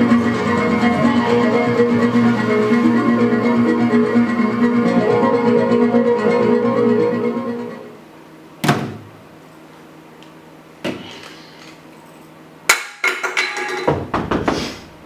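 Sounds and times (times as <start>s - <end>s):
music: 0.0s - 8.0s.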